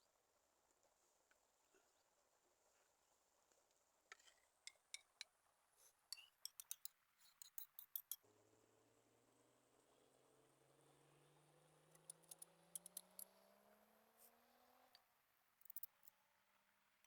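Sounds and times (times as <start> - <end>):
light sharp clicks and clinks: 6.1 - 8.2, 11.9 - 13.4, 15.6 - 16.2.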